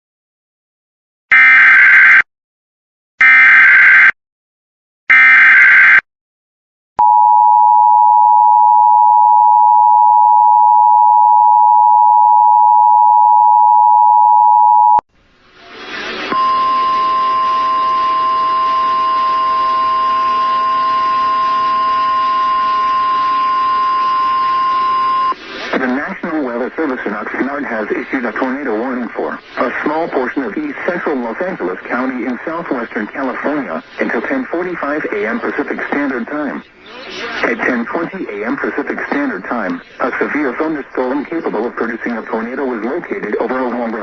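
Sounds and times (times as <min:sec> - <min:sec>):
radio static: 0:15.9 - 0:44.0
steady warning tone: 0:16.3 - 0:25.4
two-tone attention signal: 0:16.3 - 0:25.4.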